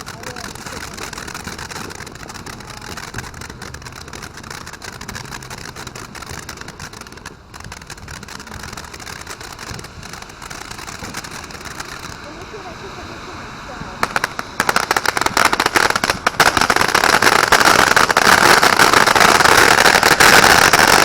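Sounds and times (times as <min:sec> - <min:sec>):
firework fountain hissing and crackling: 0:00.0 - 0:21.0.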